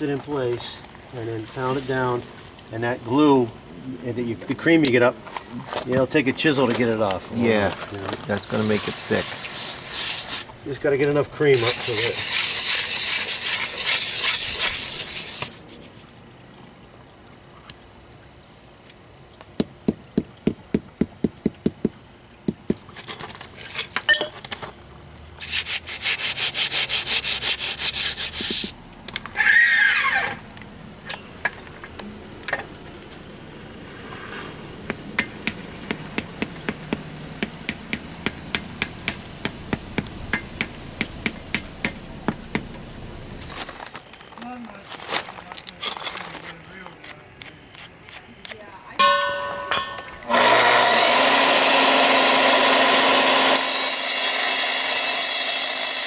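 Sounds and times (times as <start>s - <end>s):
scraping on concrete: 4.8s - 16.1s, 25.4s - 30.4s, 33.9s - 34.7s, 43.3s - 51.1s
light tapping on pavers: 18.9s - 23.4s, 34.7s - 43.7s.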